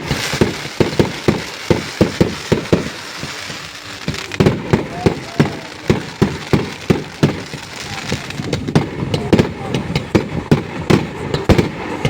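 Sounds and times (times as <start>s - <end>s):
fireworks bangs: 0.0s - 12.0s
fireworks crackling: 0.0s - 12.0s.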